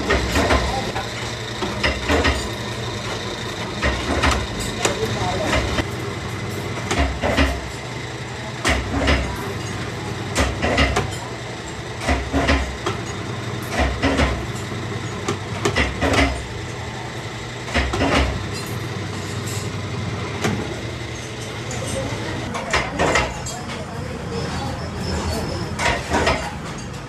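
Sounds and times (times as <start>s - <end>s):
steady hum: 0.0s - 8.5s.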